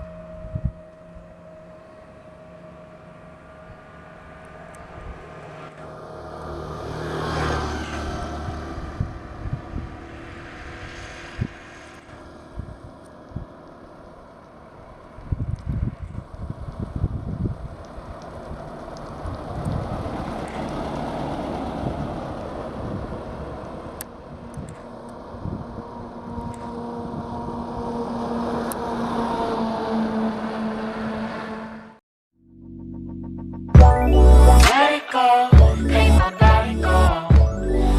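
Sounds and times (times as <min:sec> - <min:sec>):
wind buffeting microphone: 0:00.0 - 0:01.3, 0:07.6 - 0:30.3
vehicles passing close by: 0:00.0 - 0:32.0
vehicle engine drone: 0:00.0 - 0:35.0, 0:35.6 - 0:37.9.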